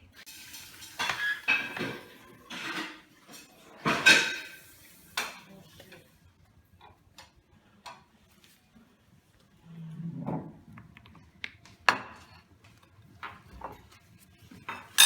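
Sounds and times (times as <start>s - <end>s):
dishes and pans clanking: 0.4s - 5.5s, 14.6s - 15.0s.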